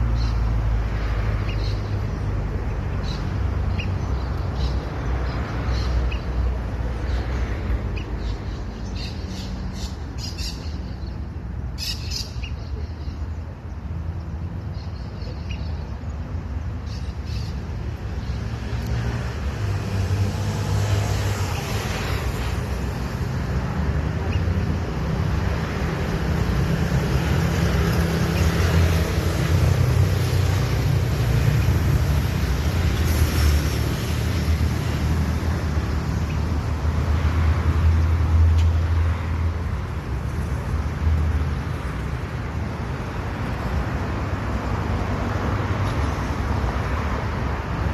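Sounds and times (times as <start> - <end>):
road traffic rumble: 0.0 - 47.9.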